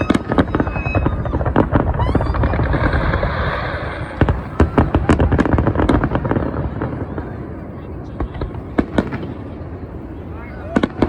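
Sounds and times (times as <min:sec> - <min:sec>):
firework rising whistle: 0:00.0 - 0:06.3
fireworks crackling: 0:00.0 - 0:11.0.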